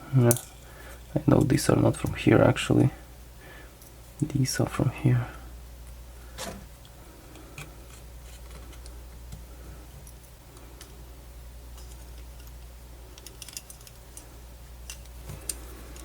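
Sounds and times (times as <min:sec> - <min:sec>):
low steady hum: 0:00.0 - 0:16.0
clicks of small screws and parts: 0:11.8 - 0:14.3.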